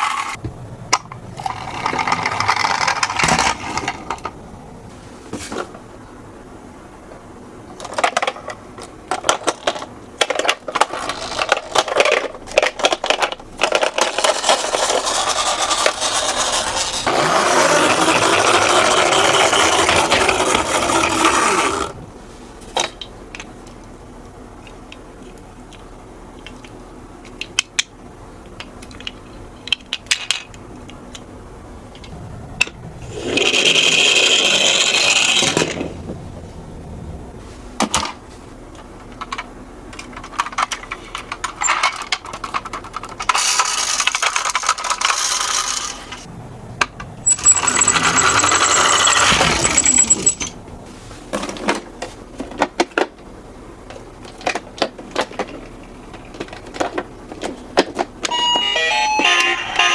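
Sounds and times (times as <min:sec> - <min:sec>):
toy cars rolling down track: 0:00.0 - 0:00.4, 0:01.4 - 0:04.3, 0:07.8 - 0:22.0, 0:33.1 - 0:35.9, 0:39.2 - 0:46.3, 0:47.2 - 0:50.5, 0:54.2 - 0:59.9
toys clicking being handled: 0:24.6 - 0:31.3, 0:39.1 - 0:46.2
thin high steady tone: 0:47.2 - 0:50.5, 0:58.3 - 0:59.9.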